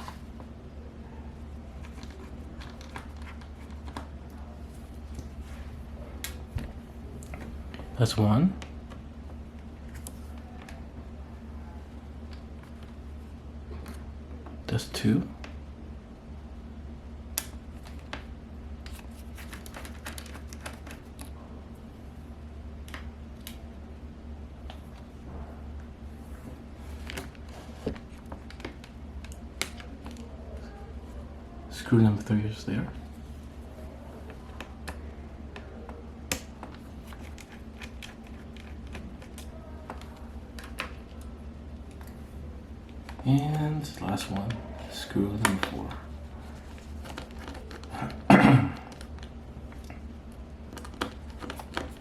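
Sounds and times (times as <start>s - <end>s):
steady low hum: 0.0s - 52.0s.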